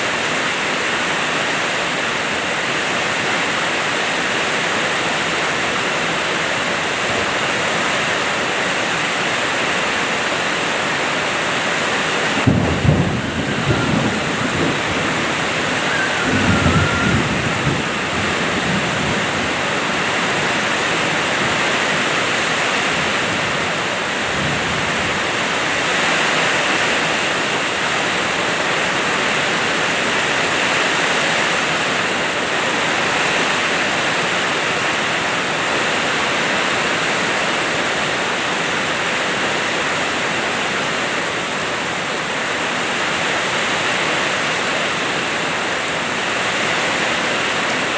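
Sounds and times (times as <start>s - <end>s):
heavy rain pouring: 0.0s - 47.9s
low rumble of thunder: 12.4s - 19.7s.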